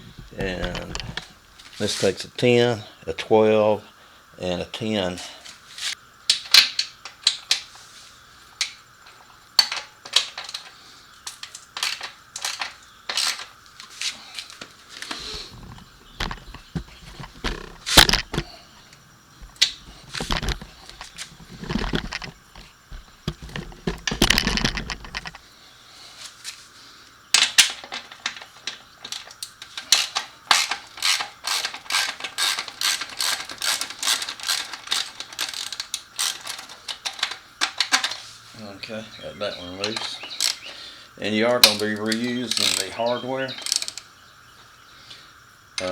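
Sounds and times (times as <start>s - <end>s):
tools and metal parts clinking: 8.6s - 14.0s, 15.4s - 18.5s, 19.4s - 25.4s, 27.4s - 38.3s, 39.8s - 40.7s, 41.6s - 44.0s
socket ratchet clicking: 43.6s - 44.0s.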